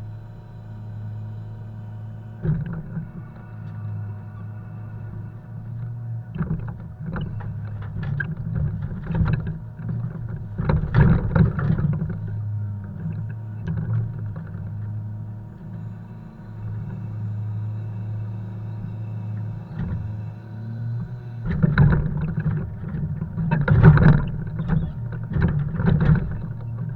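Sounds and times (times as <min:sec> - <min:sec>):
diesel truck engine humming: 0:00.0 - 0:26.9
logs knocking and clunking: 0:02.4 - 0:03.2, 0:05.7 - 0:15.1, 0:21.4 - 0:26.9.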